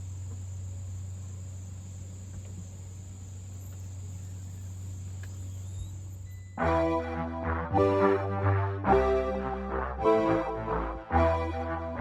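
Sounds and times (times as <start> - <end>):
insects chorus: 0.0 - 6.6.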